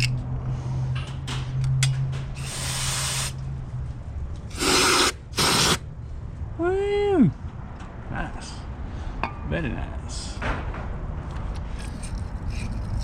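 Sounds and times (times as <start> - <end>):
loud hissing bursts: 2.4 - 3.4, 4.5 - 5.8.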